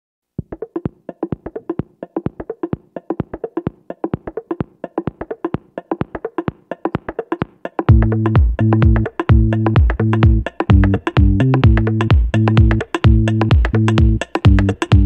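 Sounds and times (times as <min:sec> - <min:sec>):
ticking electronic percussion: 0:07.8 - 0:15.0
heavy bass: 0:07.9 - 0:15.0.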